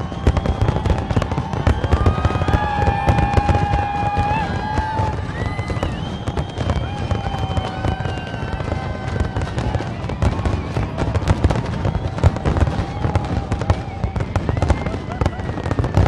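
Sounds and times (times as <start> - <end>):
crowd cheering: 0.0 - 16.0
firework bangs and crackles: 0.0 - 16.0.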